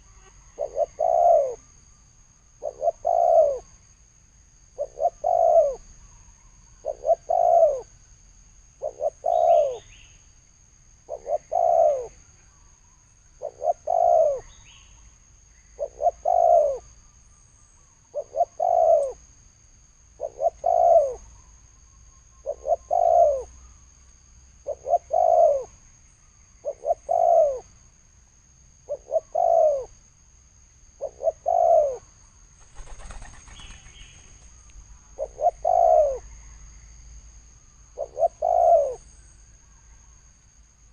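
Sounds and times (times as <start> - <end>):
dove cooing: 0.0 - 1.6, 2.6 - 3.7, 4.8 - 5.9, 6.8 - 7.9, 8.8 - 9.9, 11.1 - 12.2, 13.4 - 14.6, 15.8 - 16.8, 18.1 - 19.2, 20.2 - 21.3, 22.4 - 23.6, 24.6 - 25.8, 26.6 - 27.7, 28.9 - 30.0, 31.0 - 32.1, 35.1 - 36.3, 38.0 - 39.0.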